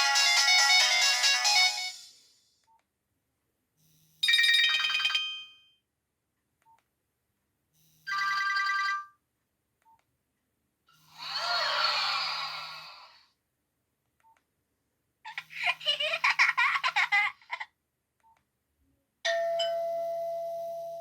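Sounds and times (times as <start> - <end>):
electronic ringtone melody: 0.0 - 2.1, 4.2 - 5.6.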